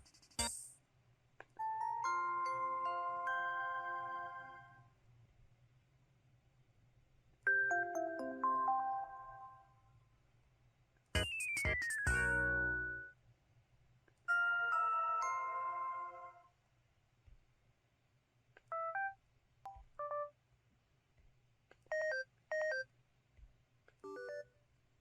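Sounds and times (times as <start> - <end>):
two-note electronic beeps: 11.2 - 13.1.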